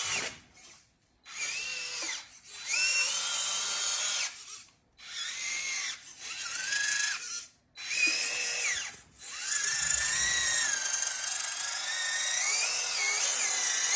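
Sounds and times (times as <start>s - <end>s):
electric motor whining: 7.9s - 13.9s.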